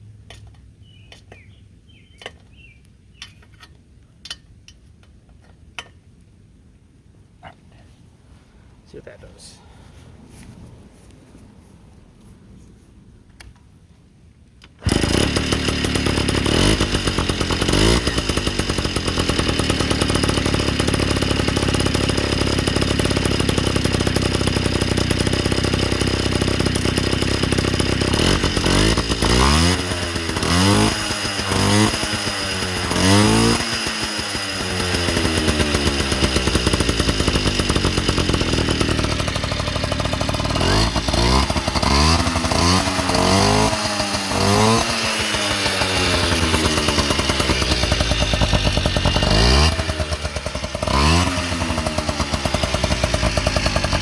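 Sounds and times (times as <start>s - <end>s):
moped engine idling and revving: 14.8s - 54.0s.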